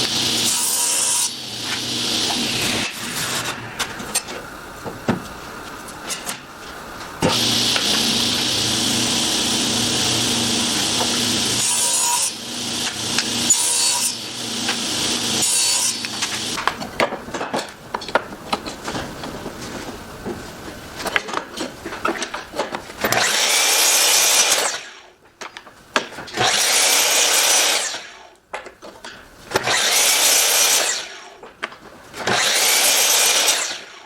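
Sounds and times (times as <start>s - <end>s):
power tool cutting wood: 0.0s - 3.6s, 7.2s - 16.6s, 23.0s - 25.0s, 26.3s - 28.2s, 29.6s - 31.4s, 32.2s - 34.0s.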